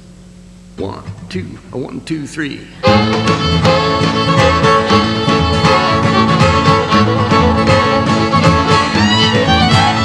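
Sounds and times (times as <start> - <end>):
fiddle playing: 2.8 - 10.0
guitar playing: 2.8 - 10.0
steady beat: 2.8 - 10.0.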